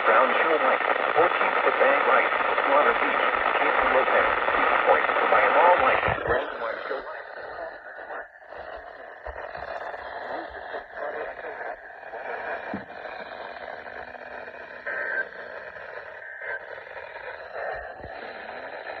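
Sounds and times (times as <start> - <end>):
radio static hiss: 0.0 - 19.0.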